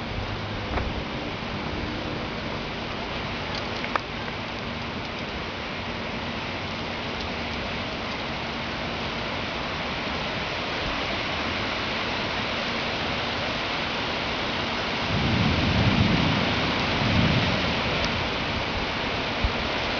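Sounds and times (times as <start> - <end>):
heavy rain: 0.0 - 19.9
low rumble of thunder: 15.0 - 19.6.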